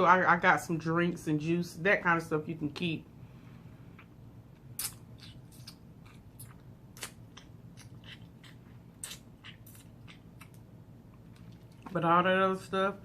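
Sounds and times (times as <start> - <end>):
low steady hum: 0.0 - 13.0
person chewing sandwich: 3.9 - 11.8
crackly mouth clicks: 4.0 - 10.6.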